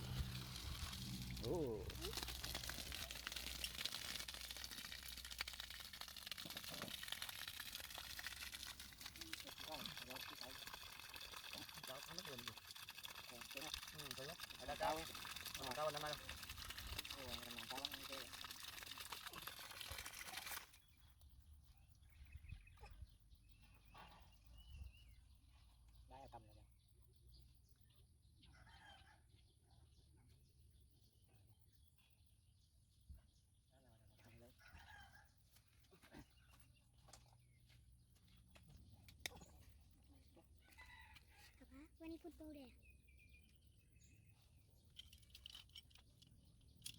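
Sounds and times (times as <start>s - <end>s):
faint bird chirps: 20.8s - 35.2s, 35.8s - 45.2s.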